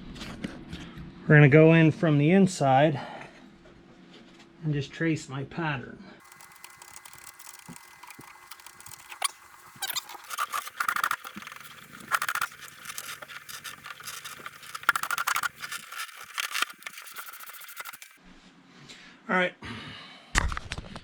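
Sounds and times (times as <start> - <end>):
pen scratching on surface: 6.2 - 18.2.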